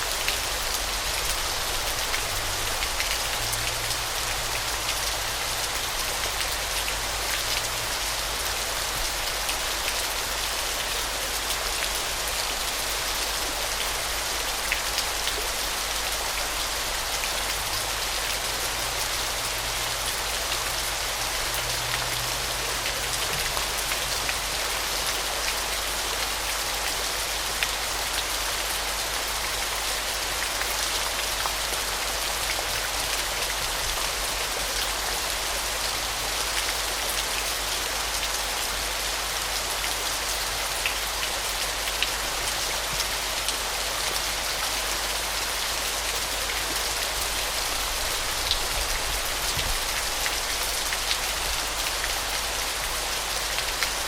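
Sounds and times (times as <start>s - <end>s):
water drips and splashes: 0.0s - 54.0s.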